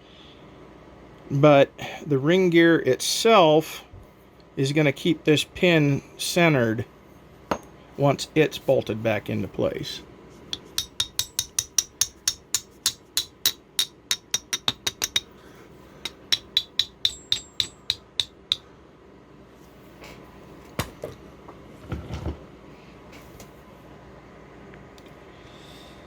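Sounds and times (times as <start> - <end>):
hammer tapping steel pin: 10.5 - 15.4, 16.0 - 18.7.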